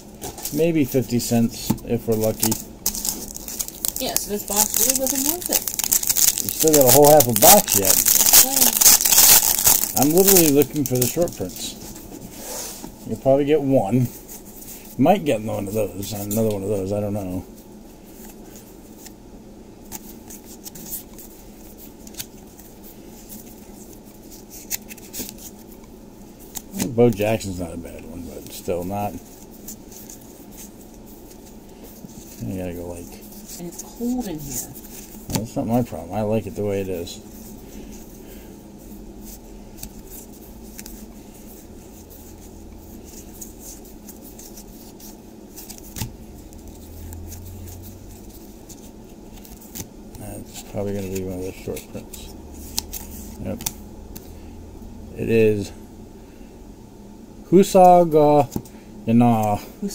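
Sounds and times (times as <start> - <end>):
low room hum: 0.0 - 59.9
trading cards rustling: 0.2 - 12.7, 15.5 - 17.1, 19.8 - 25.6, 39.2 - 54.4.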